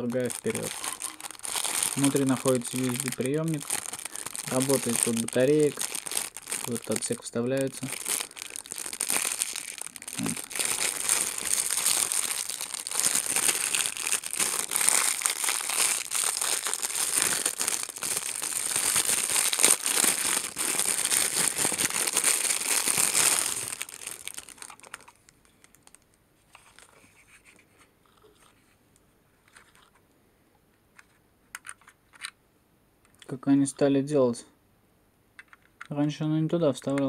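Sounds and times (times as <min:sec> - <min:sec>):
plastic packaging crinkling: 0:00.0 - 0:28.6.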